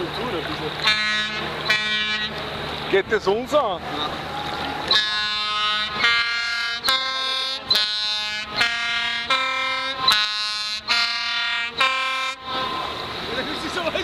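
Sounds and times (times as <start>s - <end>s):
ship's horn playing tune: 0.8s - 2.5s, 4.4s - 13.3s.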